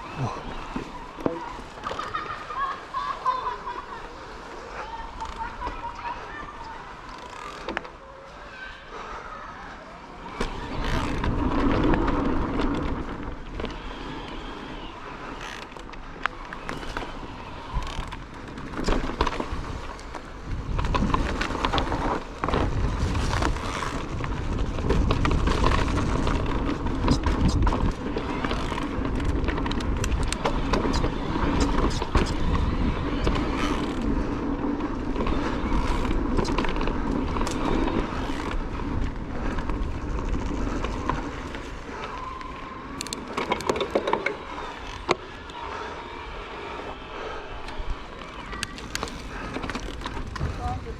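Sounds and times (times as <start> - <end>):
bike tyres over dirt: 0.0 - 8.4, 10.0 - 50.9
wind rumble on microphone: 16.8 - 43.1.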